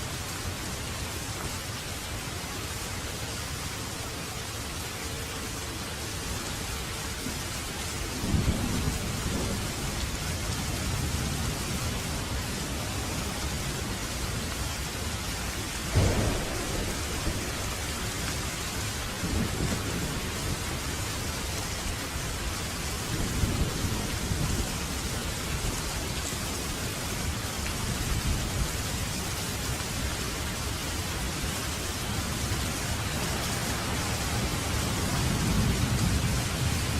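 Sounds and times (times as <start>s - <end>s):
steady rain: 0.0s - 36.9s
low rolls of thunder: 8.0s - 13.9s, 15.9s - 25.0s, 32.9s - 36.9s.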